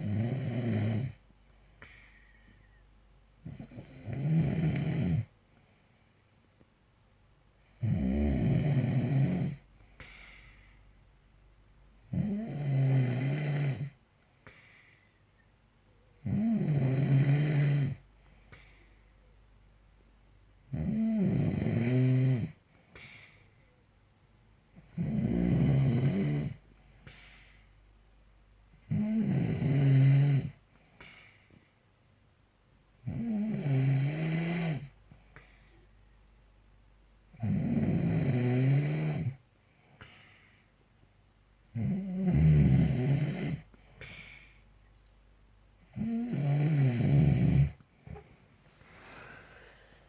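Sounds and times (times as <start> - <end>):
man snoring loudly: 0.0 - 1.2, 3.5 - 5.3, 7.8 - 9.6, 12.1 - 14.0, 16.2 - 18.0, 20.7 - 22.6, 24.8 - 26.6, 28.8 - 30.6, 33.0 - 34.9, 37.4 - 39.4, 41.8 - 43.6, 45.9 - 47.8
quiet breathing: 0.8 - 6.9, 9.5 - 12.2, 13.7 - 16.3, 17.6 - 19.9, 22.5 - 24.0, 24.6 - 28.1, 30.5 - 32.1, 34.7 - 36.1, 39.2 - 41.2, 43.5 - 45.1, 45.8 - 50.0.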